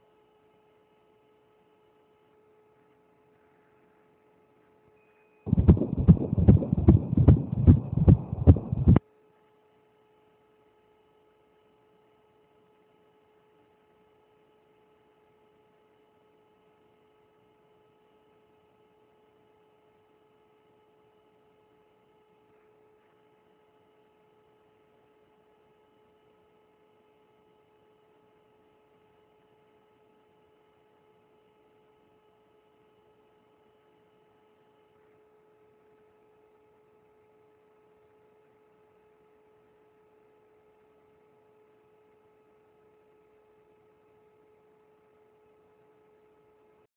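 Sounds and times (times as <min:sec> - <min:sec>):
faint electrical hum: 0:00.0 - 0:09.0
fetal heartbeat on doppler: 0:05.5 - 0:09.0.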